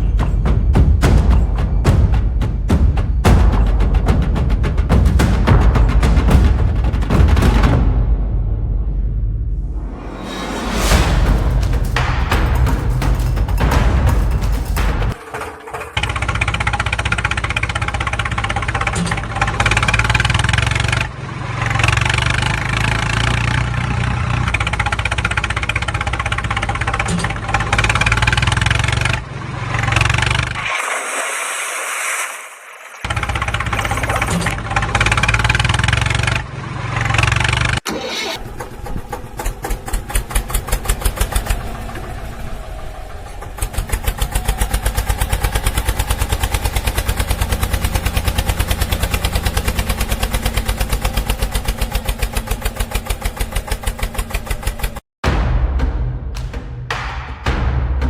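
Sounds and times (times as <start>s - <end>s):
heavy engine running: 38.4s - 55.0s.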